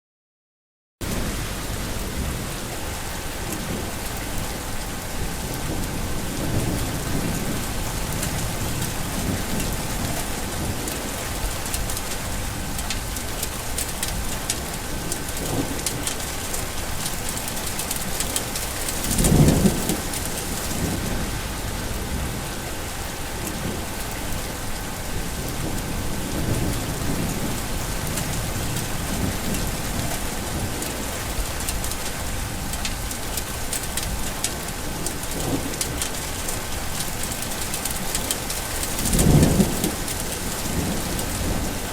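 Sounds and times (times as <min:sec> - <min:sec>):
steady rain: 0:01.0 - 0:41.9
thunder rumbling: 0:01.0 - 0:41.9
wind: 0:01.0 - 0:41.9.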